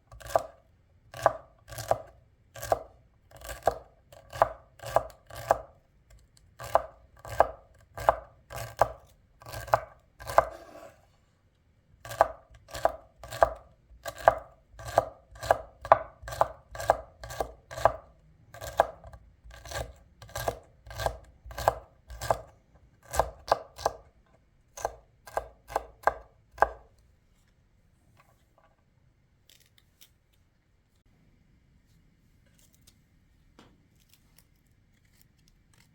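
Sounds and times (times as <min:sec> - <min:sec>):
knife chopping on cutting board: 0:00.1 - 0:05.7, 0:06.6 - 0:11.0, 0:12.0 - 0:24.1, 0:24.8 - 0:26.9.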